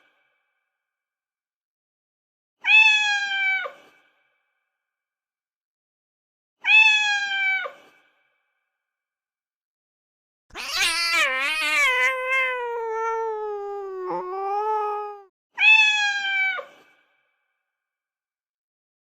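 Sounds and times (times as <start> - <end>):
cat meowing: 10.5 - 16.6.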